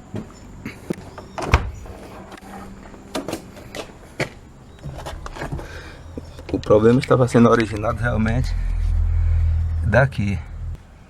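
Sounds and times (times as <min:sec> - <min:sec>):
knocks and clunks: 0:00.9 - 0:02.4, 0:04.2 - 0:10.8.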